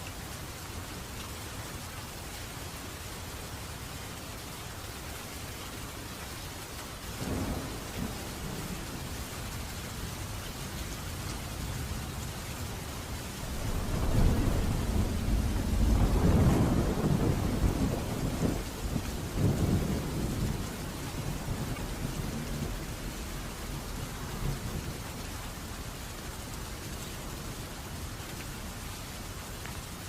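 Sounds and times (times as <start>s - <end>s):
steady rain: 0.0s - 30.0s
thunder rumbling: 13.3s - 25.0s.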